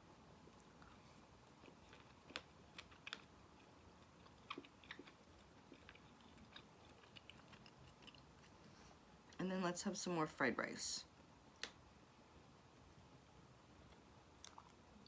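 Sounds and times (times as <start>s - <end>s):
person chewing with wet clicks: 0.5s - 8.5s, 13.8s - 15.0s.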